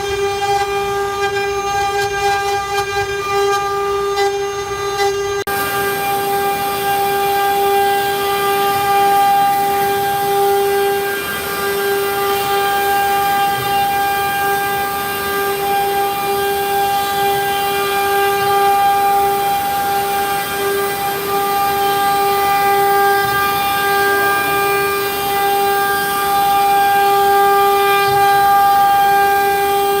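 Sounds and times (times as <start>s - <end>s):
router spindle whining: 0.0s - 30.0s
hiss of wood cutting: 3.3s - 30.0s.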